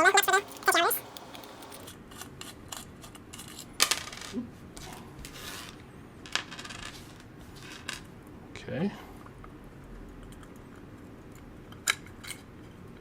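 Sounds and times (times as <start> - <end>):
metal parts and tools clinking: 0.0 - 1.9.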